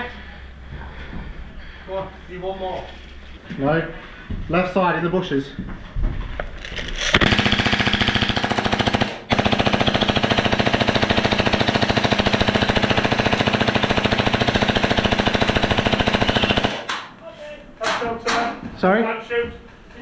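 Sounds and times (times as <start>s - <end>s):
airsoft gun full auto bursts: 7.0s - 17.1s.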